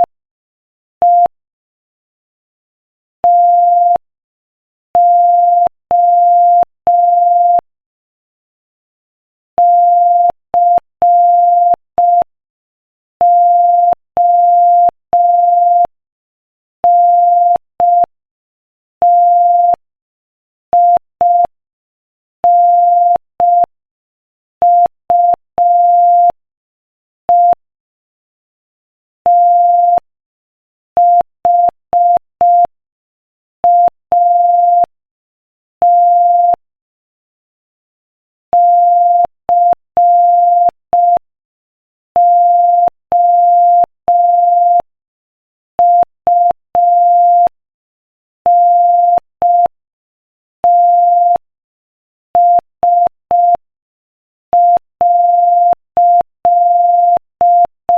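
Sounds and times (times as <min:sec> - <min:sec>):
morse code beeps: 0:13.2 - 0:15.9, 0:19.0 - 0:19.8, 0:20.8 - 0:21.5, 0:22.5 - 0:23.7, 0:24.6 - 0:26.4, 0:27.3 - 0:27.6, 0:29.3 - 0:30.0, 0:31.0 - 0:32.7, 0:33.7 - 0:34.9, 0:35.8 - 0:36.6, 0:38.5 - 0:41.2, 0:42.2 - 0:44.9, 0:45.8 - 0:47.6, 0:48.5 - 0:49.8, 0:50.6 - 0:51.4, 0:52.4 - 0:53.6, 0:54.5 - 0:57.9.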